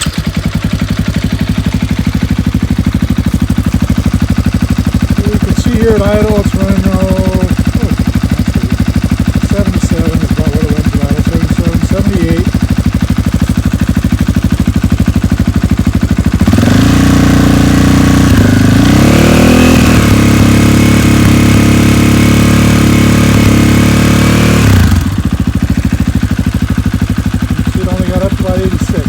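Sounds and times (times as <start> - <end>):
motorcycle engine idling and revving: 0.0 - 29.0.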